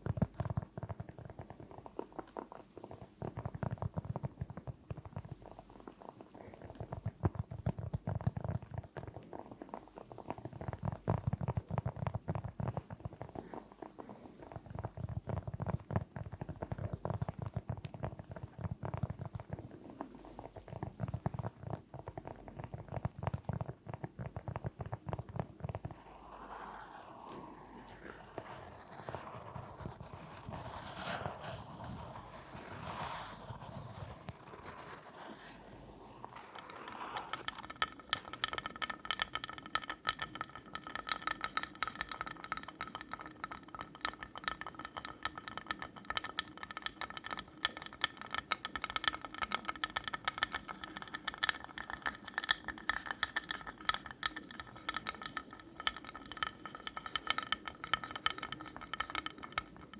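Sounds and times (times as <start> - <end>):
fast tapping on ringing object: 24.5 - 59.9
fingernails scratching: 26.0 - 38.8.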